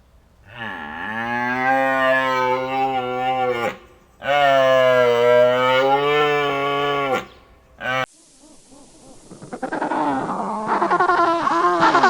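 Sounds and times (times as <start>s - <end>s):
cow mooing: 0.4s - 8.1s.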